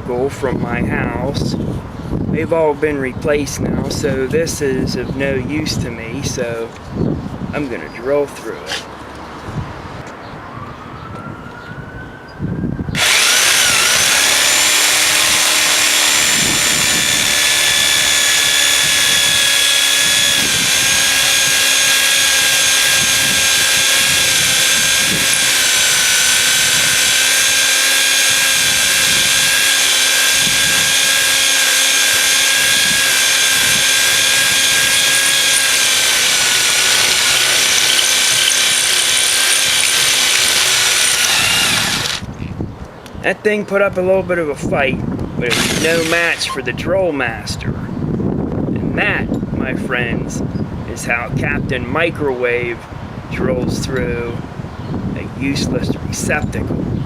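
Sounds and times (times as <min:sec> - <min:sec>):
power drill whining: 0:12.9 - 0:42.3, 0:45.5 - 0:46.8.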